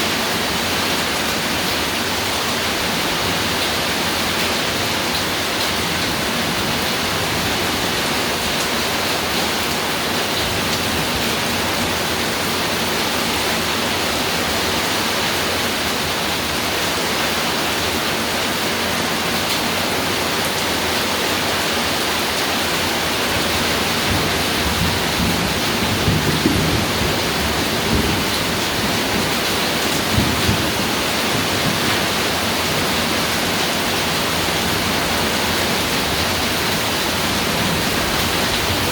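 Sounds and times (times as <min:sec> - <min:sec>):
heavy rain on a roof: 0:00.0 - 0:38.9
low thunder rumbling: 0:24.0 - 0:32.9.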